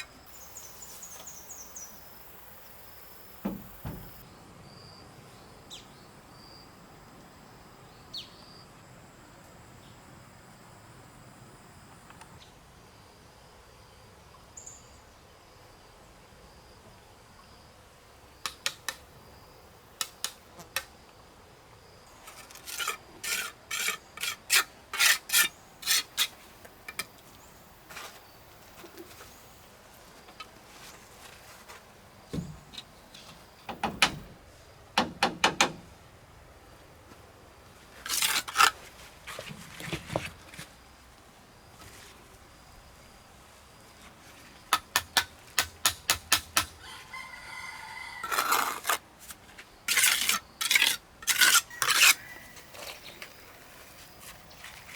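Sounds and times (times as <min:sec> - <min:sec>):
hand tool scraping: 0:22.1 - 0:27.1, 0:38.0 - 0:40.7, 0:48.2 - 0:54.9.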